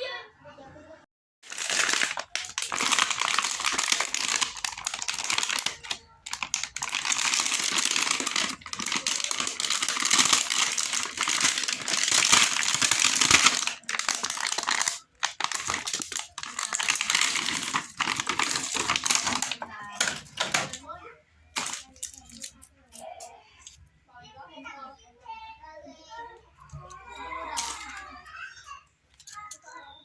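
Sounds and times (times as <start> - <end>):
plastic wrappers crinkling: 1.4 - 20.9, 21.5 - 23.0, 26.7 - 28.2.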